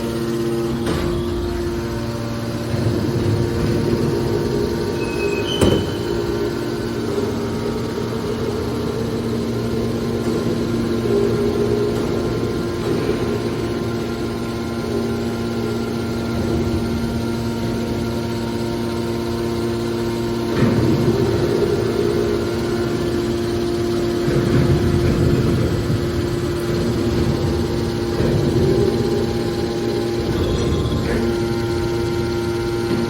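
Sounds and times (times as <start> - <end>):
hydraulic baler motor hum: 0.0 - 33.0
short high squeak: 5.0 - 6.2.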